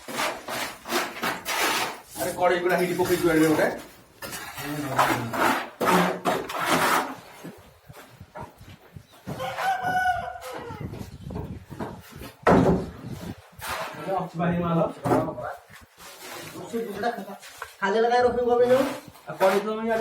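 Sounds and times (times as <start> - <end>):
rooster crowing: 9.3 - 11.0
knocks and clatter: 11.3 - 13.0.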